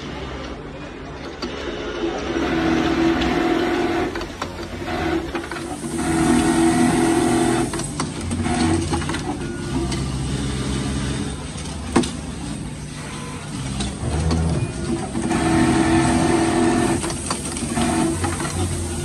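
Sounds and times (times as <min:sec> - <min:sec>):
sewing machine motor hum: 0:02.2 - 0:11.5, 0:13.4 - 0:19.0.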